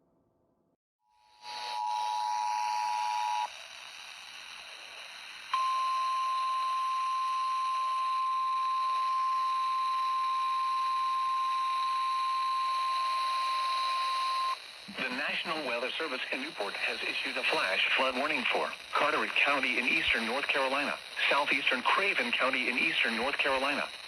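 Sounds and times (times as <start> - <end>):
radio static hiss: 1.4 - 24.0
steady single-tone warning alarm: 5.5 - 14.6.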